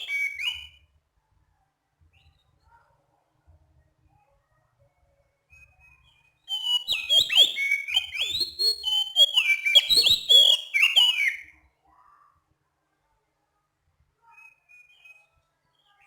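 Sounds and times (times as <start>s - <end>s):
bird singing whistled notes: 0.0s - 0.8s, 5.5s - 11.6s, 14.2s - 16.0s.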